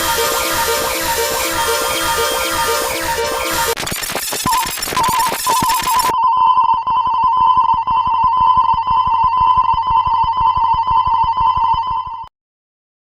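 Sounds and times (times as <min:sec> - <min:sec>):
level crossing alarm ringing: 0:00.0 - 0:06.1.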